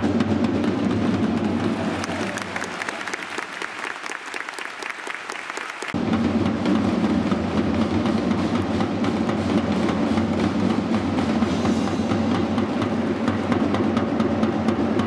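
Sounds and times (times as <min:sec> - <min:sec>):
drumming and music: 0:00.0 - 0:04.0, 0:06.0 - 0:15.0
crowd clapping in rhythm: 0:01.5 - 0:06.0.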